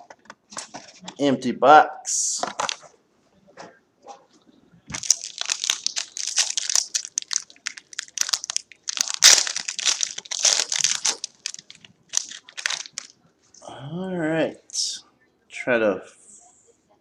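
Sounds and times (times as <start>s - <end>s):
plastic foil wrapper crinkling: 4.9s - 13.2s.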